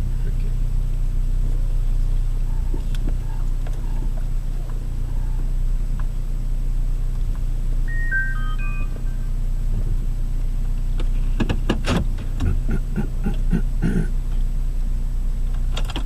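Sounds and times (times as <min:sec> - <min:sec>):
car road hum: 0:00.0 - 0:16.0
descending electronic chime: 0:07.9 - 0:09.4.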